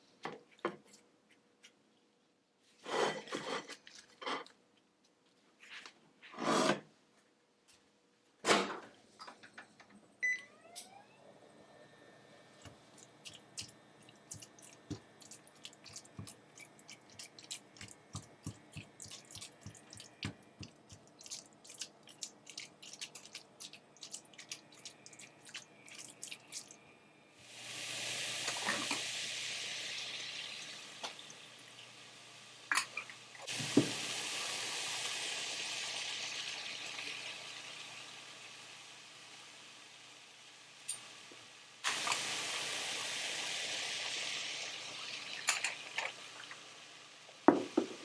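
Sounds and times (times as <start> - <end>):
kitchen tap running: 12.4 - 26.8, 27.5 - 38.6, 41.8 - 48.0.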